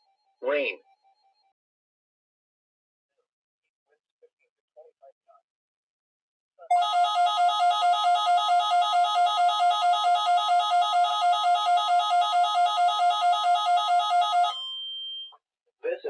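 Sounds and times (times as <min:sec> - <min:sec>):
electronic warbling alarm: 0:06.7 - 0:15.3.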